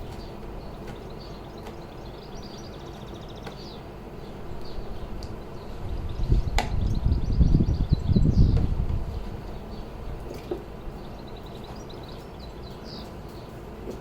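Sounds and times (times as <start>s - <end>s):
small birds chirping faintly: 0.0s - 14.0s
low rumbling noise: 4.2s - 13.0s.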